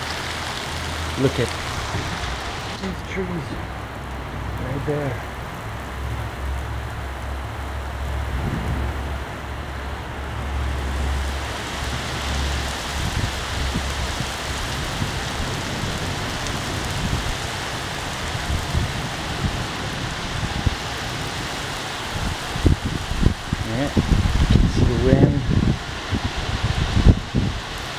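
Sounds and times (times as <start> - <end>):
low rumble: 0.0 - 17.0
heavy rain pouring: 0.0 - 27.9
wind buffeting microphone: 0.0 - 27.9.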